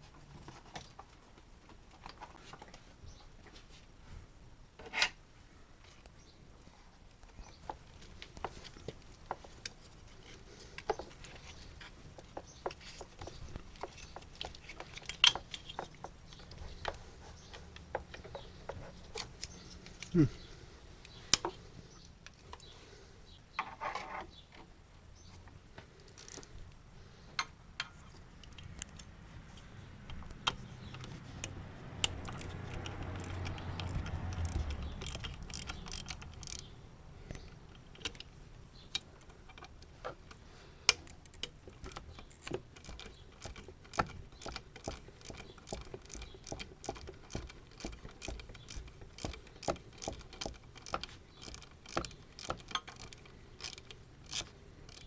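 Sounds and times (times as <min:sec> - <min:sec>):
hand tools clicking and clinking: 0:07.5 - 0:20.3, 0:32.0 - 0:55.0.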